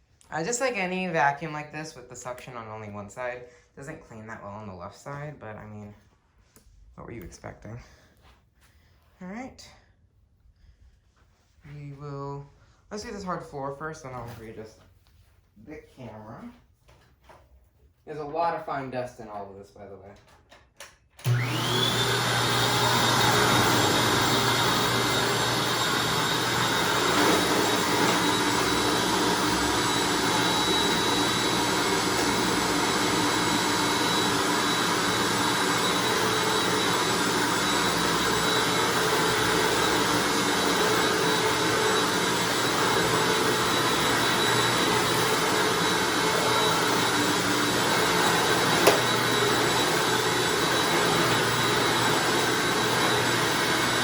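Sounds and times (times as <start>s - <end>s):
upright vacuum whining: 21.2s - 54.0s.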